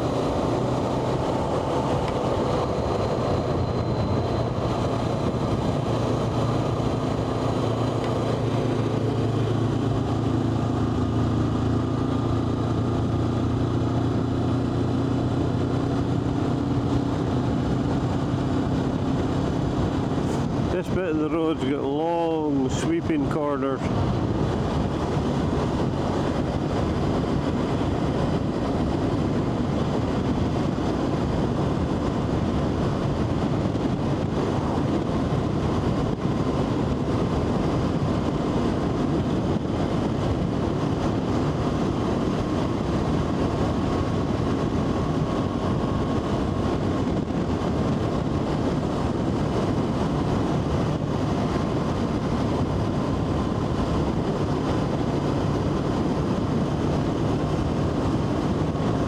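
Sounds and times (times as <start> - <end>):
motorcycle engine cruising: 0.0 - 21.6.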